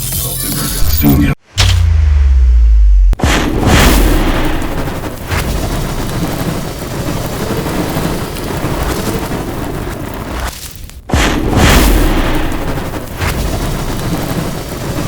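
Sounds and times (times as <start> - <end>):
fire crackling: 3.2 - 15.0
whoosh of flame: 3.2 - 15.0.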